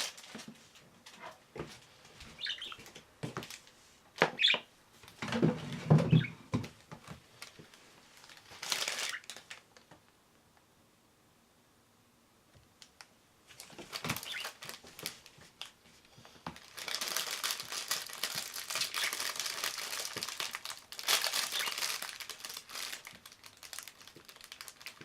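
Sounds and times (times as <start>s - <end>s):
budgerigars scuffling: 2.2s - 3.0s, 4.3s - 4.7s, 5.4s - 6.4s, 14.1s - 14.6s, 21.5s - 21.8s.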